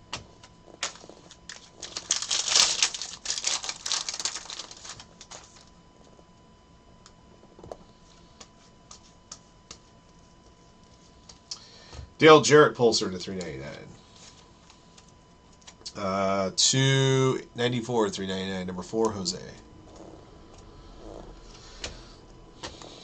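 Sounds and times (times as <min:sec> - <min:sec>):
card packaging crinkling: 0:00.7 - 0:05.7.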